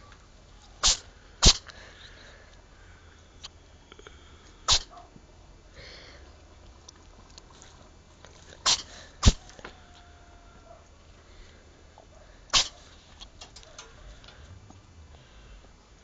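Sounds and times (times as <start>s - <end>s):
cat sneezing: 0.8s - 1.7s, 4.7s - 5.0s, 8.6s - 9.4s, 12.5s - 12.9s.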